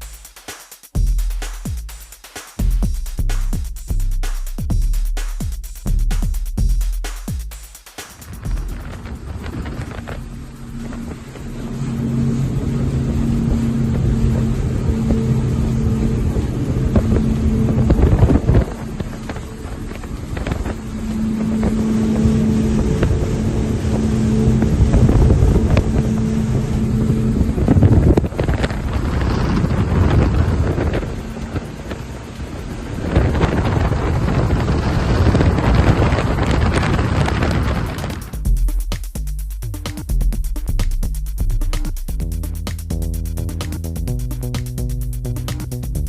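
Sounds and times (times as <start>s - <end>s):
boat engine hum: 2.6s - 46.0s
water rushing past hull: 8.0s - 38.6s
wind noise on microphone: 8.1s - 46.0s.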